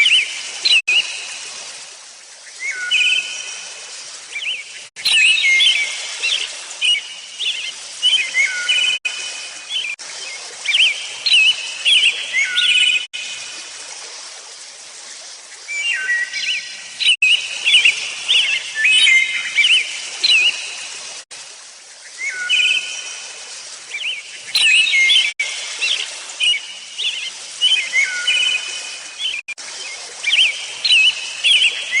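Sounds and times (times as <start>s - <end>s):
songbird singing: 4.3s - 13.1s, 15.7s - 20.8s, 22.0s - 23.1s, 23.9s - 32.0s.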